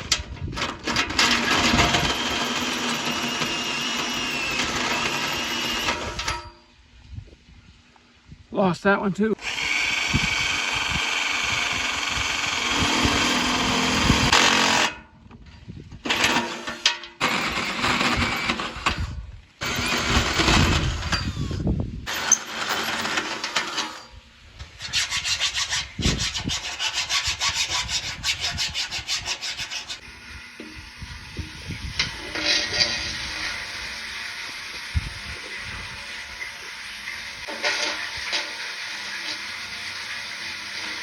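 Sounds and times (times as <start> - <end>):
drill boring into metal: 0.8 - 6.6, 9.4 - 15.0, 16.0 - 24.1, 29.5 - 41.0
tools scraping a pipe: 24.7 - 30.0, 32.0 - 35.6, 36.4 - 40.2.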